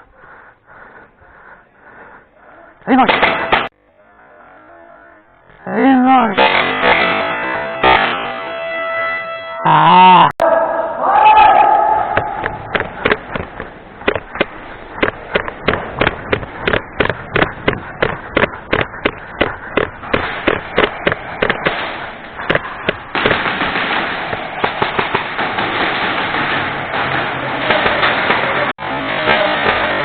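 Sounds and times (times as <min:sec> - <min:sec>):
dense rush of noise: 0:06.8 - 0:30.0
airsoft guns firing: 0:12.1 - 0:30.0.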